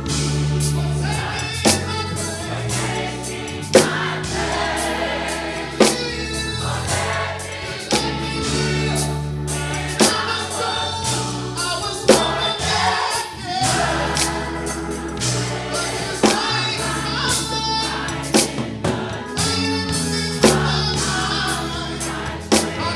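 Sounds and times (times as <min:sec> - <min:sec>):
choir singing: 0:00.0 - 0:22.9
held bass notes: 0:00.0 - 0:22.9
drum hits: 0:01.7 - 0:06.1, 0:07.9 - 0:08.3, 0:10.0 - 0:10.4, 0:12.1 - 0:16.6, 0:18.4 - 0:19.6.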